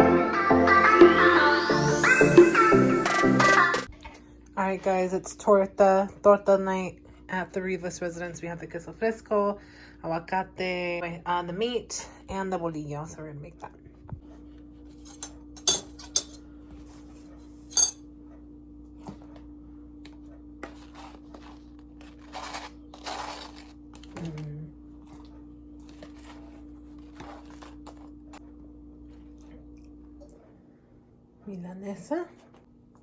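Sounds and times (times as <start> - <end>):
dishes and utensils clinking: 15.0 - 16.4, 17.7 - 18.0.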